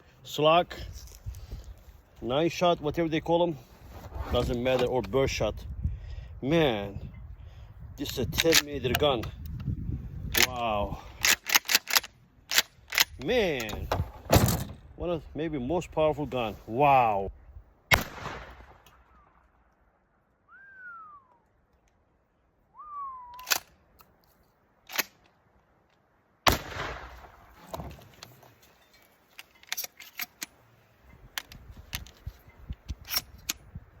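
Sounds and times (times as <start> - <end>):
shotgun action clicks: 11.2 - 13.8, 23.3 - 24.2, 24.8 - 25.4
shotgun shots: 17.9 - 18.8, 26.4 - 27.6.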